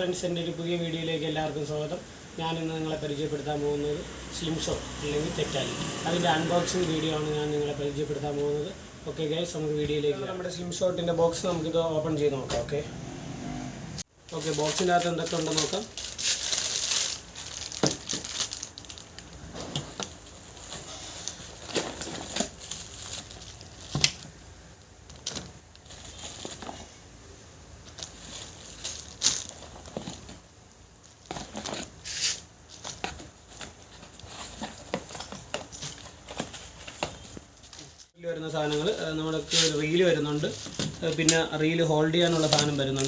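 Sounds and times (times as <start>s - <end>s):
packaging rustling: 14.2s - 24.4s, 27.9s - 43.0s.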